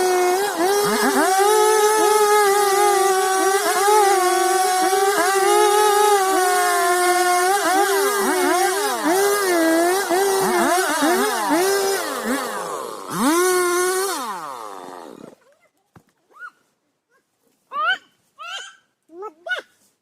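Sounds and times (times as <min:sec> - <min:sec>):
chainsaw engine revving: 0:00.0 - 0:15.4.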